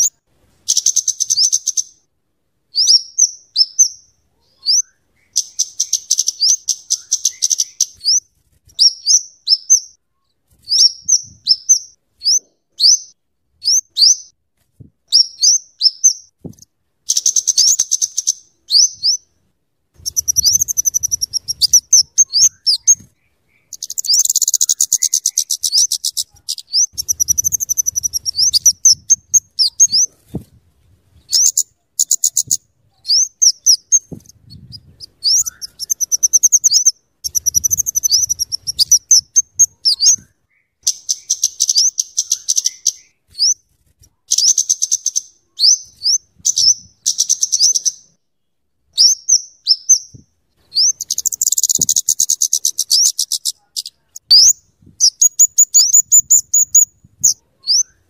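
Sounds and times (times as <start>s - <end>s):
bird calling high chattering: 0.0s - 2.0s, 2.8s - 8.2s, 17.1s - 19.3s, 20.0s - 30.1s, 31.2s - 43.6s, 50.7s - 58.0s.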